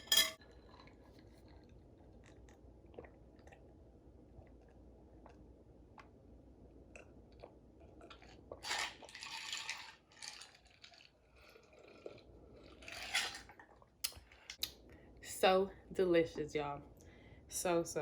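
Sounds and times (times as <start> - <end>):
chewing noodles: 0.5 - 6.2, 6.9 - 14.8.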